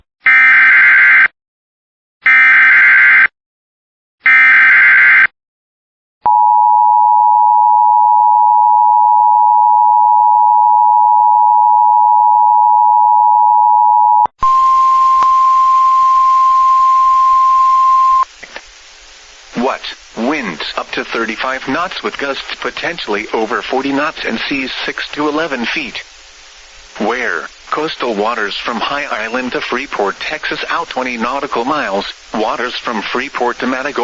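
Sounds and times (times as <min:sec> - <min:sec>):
two-tone attention signal: 0:06.3 - 0:18.2
hissy radio alert tone: 0:14.4 - 0:18.3, 0:27.0 - 0:34.0.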